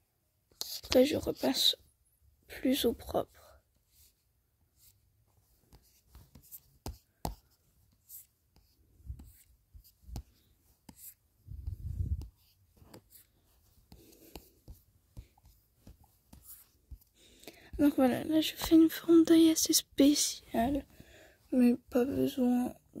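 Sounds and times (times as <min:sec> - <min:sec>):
stylus strokes on touchscreen: 0:05.7 - 0:20.9.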